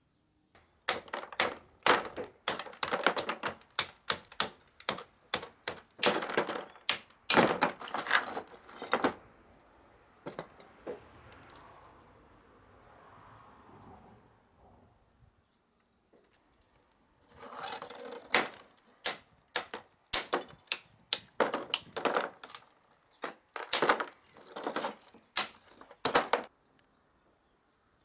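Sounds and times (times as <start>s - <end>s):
sharp clacks and knocks: 0.9s - 9.1s, 17.7s - 26.5s.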